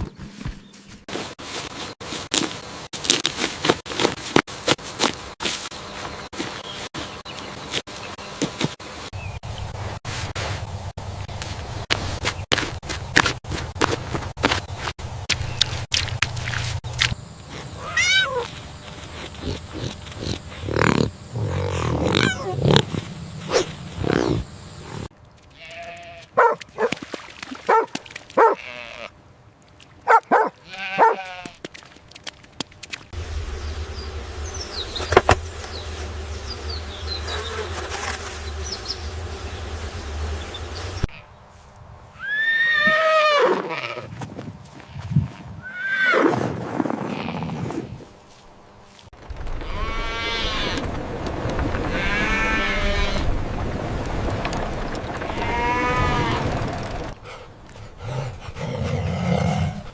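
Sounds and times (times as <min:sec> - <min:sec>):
bleating animal calls: 0:17.8 - 0:18.6, 0:19.4 - 0:22.9, 0:28.4 - 0:29.1, 0:30.6 - 0:31.6, 0:51.9 - 0:53.3, 0:55.3 - 0:56.6.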